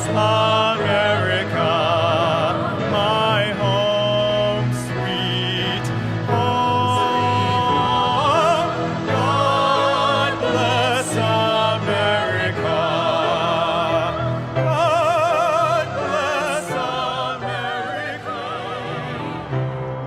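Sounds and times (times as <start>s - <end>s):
singing with wide vibrato: 0.0s - 20.0s
sustained instrumental accompaniment: 0.0s - 20.0s.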